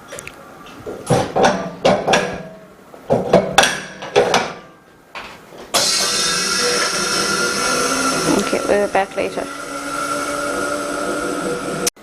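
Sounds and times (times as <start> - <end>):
hard knocks and clatter: 1.1 - 6.2
machine rushing hum: 5.8 - 12.0.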